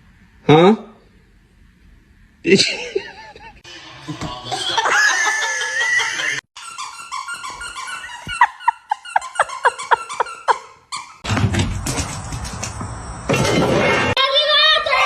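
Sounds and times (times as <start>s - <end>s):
dog yipping: 6.6s - 11.2s.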